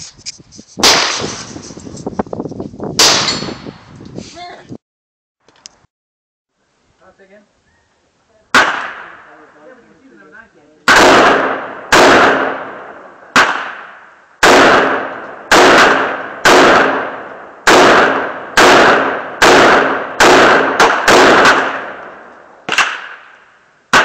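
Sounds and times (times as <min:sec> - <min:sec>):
rifle shots echoing: 0:08.5 - 0:09.3, 0:10.8 - 0:24.0.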